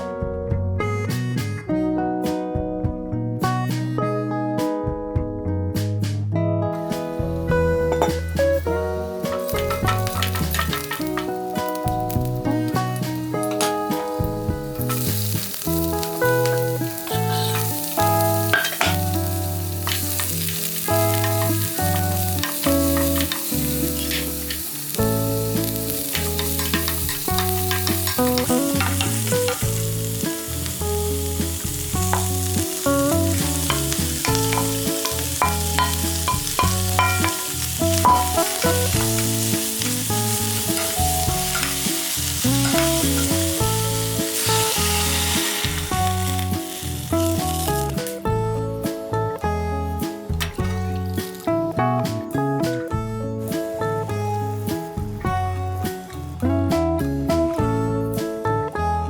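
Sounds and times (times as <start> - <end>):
background music with bass: 0.0 - 59.0
vegetables sizzling in a pan: 6.9 - 48.2.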